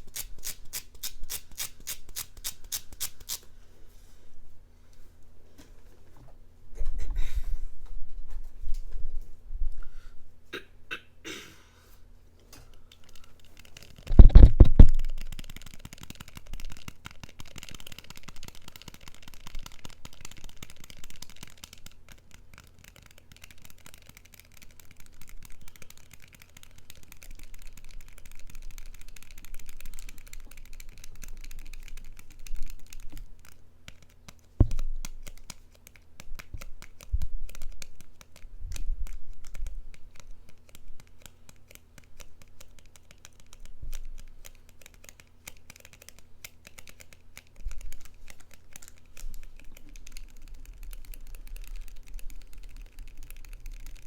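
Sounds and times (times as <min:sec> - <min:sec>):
light clicking and scratching: 0:12.4 - 0:54.0.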